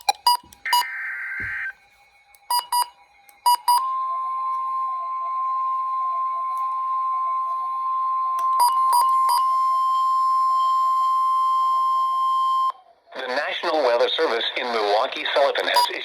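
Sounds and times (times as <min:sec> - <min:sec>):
short electronic beeps: 0:00.0 - 0:01.6, 0:02.5 - 0:02.9, 0:15.7 - 0:16.0
steady warning tone: 0:02.5 - 0:12.6.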